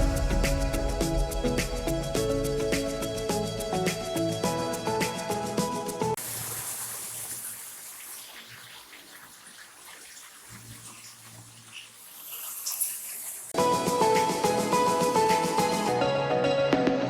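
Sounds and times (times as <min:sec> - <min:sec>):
water running from a tap: 0:06.1 - 0:14.2.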